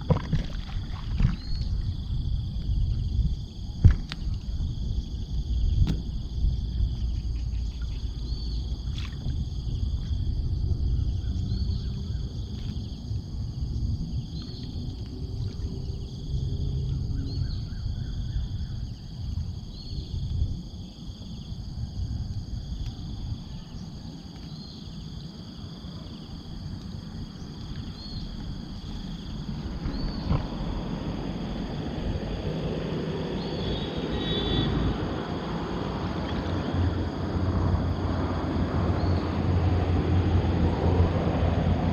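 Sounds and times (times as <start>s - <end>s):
low rumble: 0.0s - 21.0s, 26.6s - 33.5s
insects chirring: 0.0s - 41.9s.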